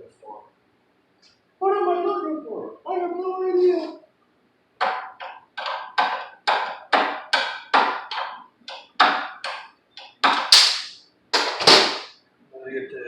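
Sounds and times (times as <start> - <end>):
hammer tapping on metal: 4.8 - 12.1.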